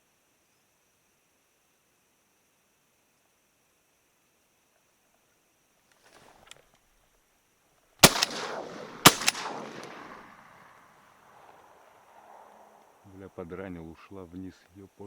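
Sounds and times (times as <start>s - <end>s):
shotgun shots with echo: 8.0s - 10.9s.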